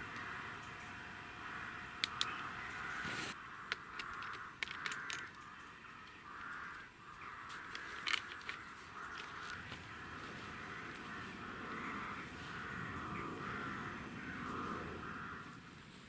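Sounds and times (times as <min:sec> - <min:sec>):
crows cawing: 0:00.0 - 0:15.6
sharp clicks: 0:02.0 - 0:02.5, 0:03.7 - 0:09.6.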